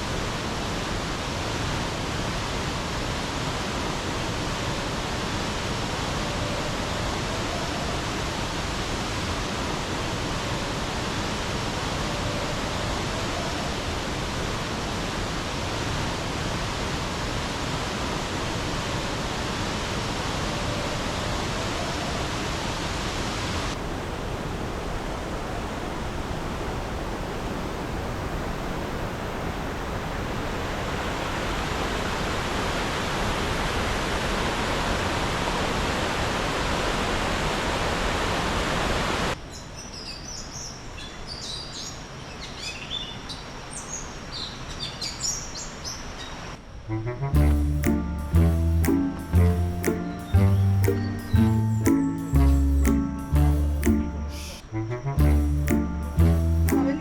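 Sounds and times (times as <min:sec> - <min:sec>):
waterfall roaring: 0:22.3 - 0:39.4.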